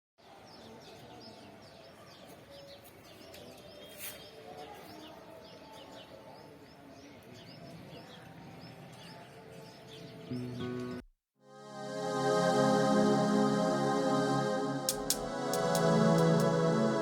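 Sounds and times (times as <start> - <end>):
sharp click: 14.9 - 16.5.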